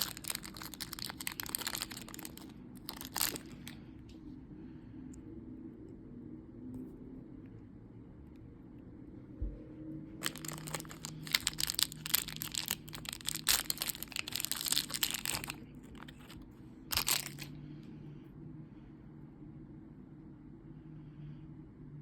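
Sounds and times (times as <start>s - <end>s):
plastic packaging crinkling: 0.0s - 3.8s, 10.2s - 17.6s.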